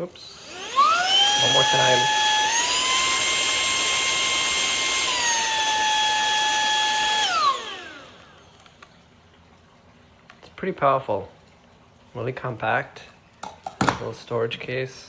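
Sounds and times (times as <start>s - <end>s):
handheld vacuum motor whining: 0.0s - 8.9s.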